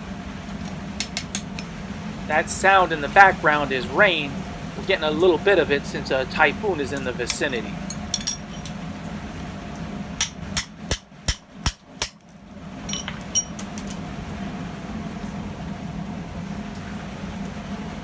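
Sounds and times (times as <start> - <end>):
steady rain: 0.0 - 7.9, 13.8 - 18.0
hammer striking steel: 1.0 - 1.7, 7.3 - 8.8, 10.2 - 12.3, 12.9 - 14.0.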